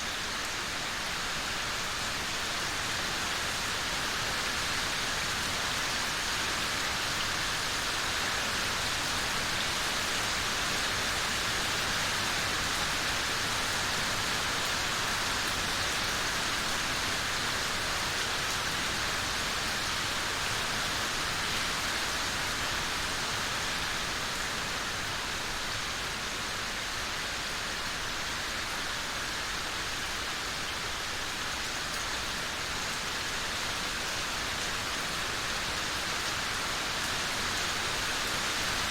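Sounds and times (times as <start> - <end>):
rain falling steadily: 0.0 - 38.9.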